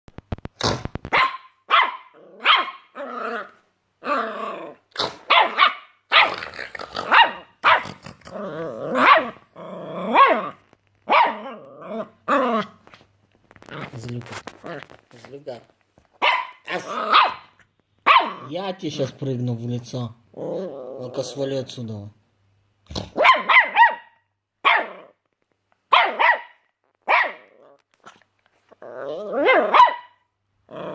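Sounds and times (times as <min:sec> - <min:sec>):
puppy yapping: 0:01.1 - 0:03.0, 0:05.0 - 0:06.4, 0:07.0 - 0:08.1, 0:08.9 - 0:09.4, 0:10.1 - 0:11.7, 0:16.2 - 0:18.5, 0:23.1 - 0:25.1, 0:25.9 - 0:27.8, 0:29.0 - 0:30.2
puppy growling: 0:02.0 - 0:13.0, 0:13.6 - 0:15.2, 0:16.5 - 0:18.6, 0:20.3 - 0:21.4, 0:24.7 - 0:25.3, 0:27.2 - 0:29.9, 0:30.6 - 0:30.9.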